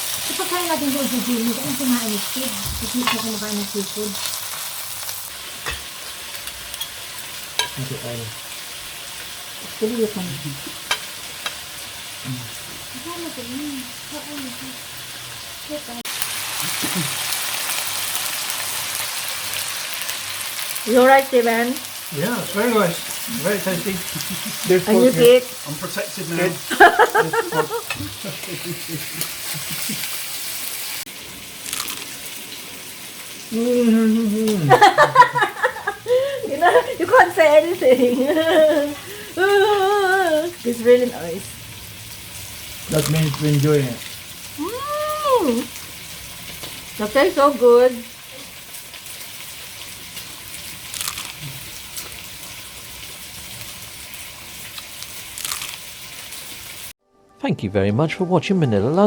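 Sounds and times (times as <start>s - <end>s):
food sizzling in a pan: 0.0s - 57.0s
frying crackle: 0.0s - 57.0s.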